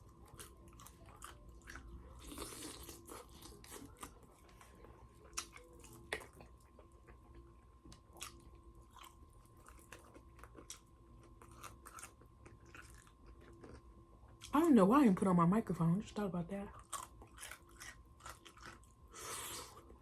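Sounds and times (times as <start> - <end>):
chewing crispy fried chicken: 0.0 - 14.7, 16.7 - 20.0.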